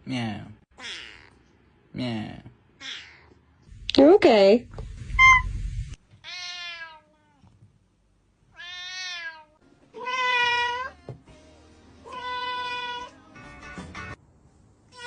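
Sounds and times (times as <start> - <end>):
cat meowing: 0.8 - 1.4, 2.8 - 3.4, 5.2 - 5.5, 6.2 - 7.5, 8.5 - 11.1, 12.0 - 13.1.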